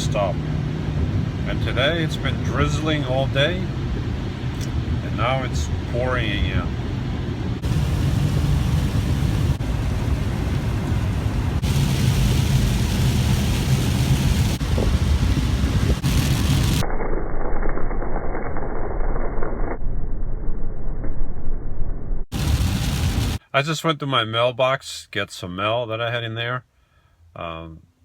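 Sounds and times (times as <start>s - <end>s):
heavy rain pouring: 7.6s - 16.8s, 22.3s - 23.4s.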